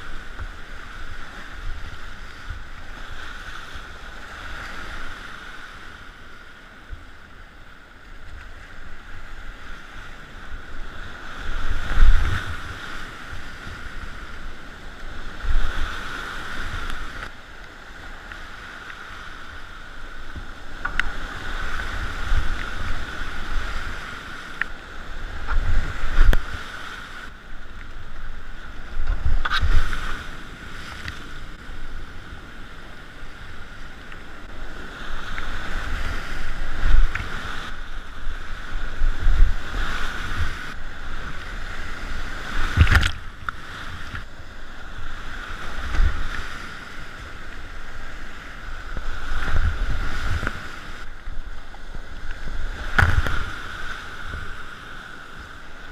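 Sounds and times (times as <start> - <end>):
wind buffeting microphone: 10.6 - 17.3, 20.3 - 54.7.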